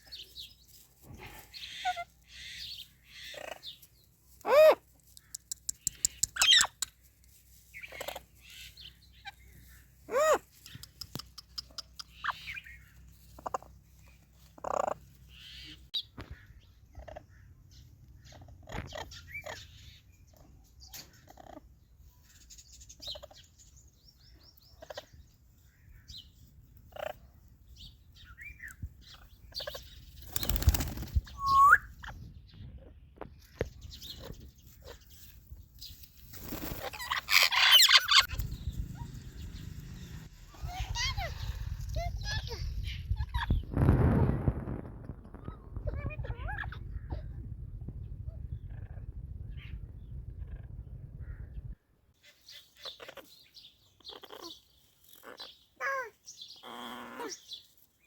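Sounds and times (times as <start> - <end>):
parrots chirping and calling: 1.2 - 4.8, 5.6 - 6.8, 7.8 - 12.8, 14.5 - 15.8, 26.9 - 27.2, 36.6 - 43.6, 52.4 - 53.4, 54.0 - 57.5
whistle-like parrot call: 31.4 - 31.9.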